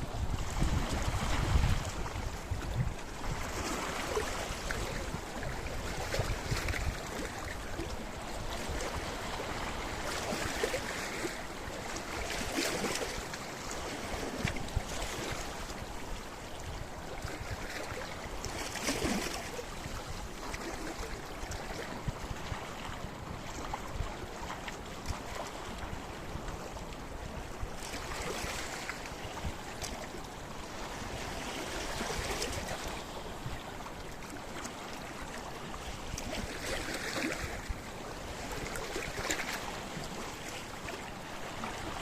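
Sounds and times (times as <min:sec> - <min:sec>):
waves washing over rocks: 0:00.0 - 0:16.0, 0:36.1 - 0:42.0.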